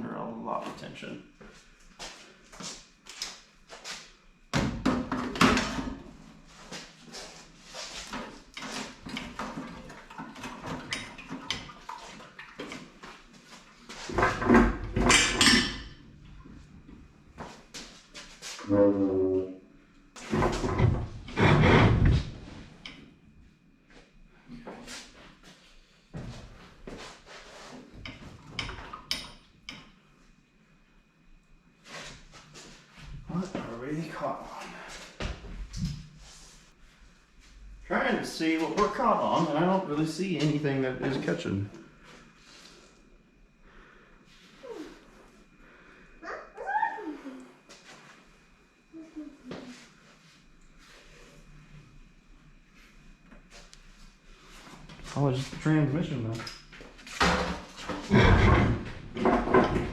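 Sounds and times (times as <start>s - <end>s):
metal clunks and scrapes: 20.2s - 22.4s, 57.1s - 59.9s.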